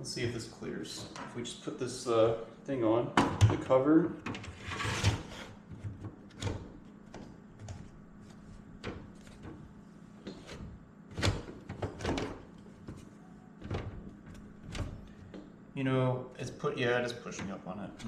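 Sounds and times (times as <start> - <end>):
cover scraping: 4.4 - 5.6.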